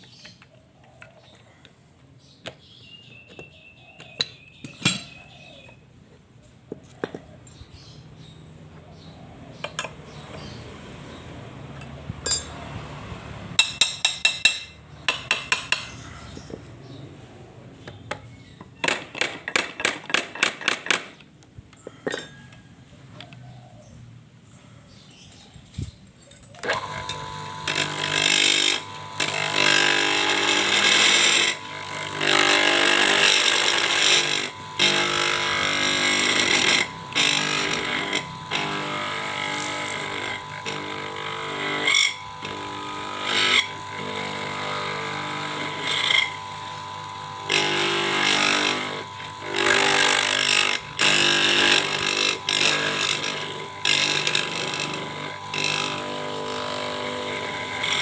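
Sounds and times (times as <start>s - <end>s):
lathe motor running: 26.6s - 58.0s.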